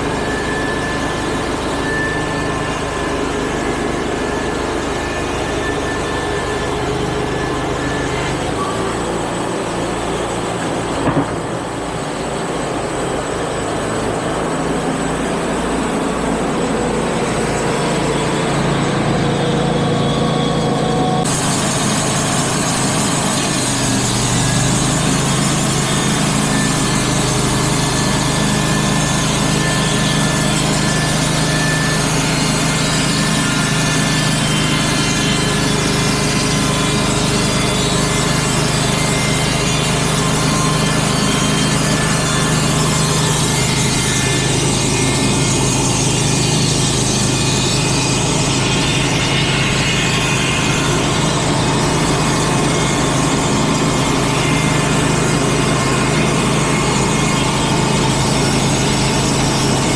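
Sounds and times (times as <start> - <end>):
band sawmill engine running: 0.0 - 59.9
saw blade hissing through log: 21.2 - 29.0.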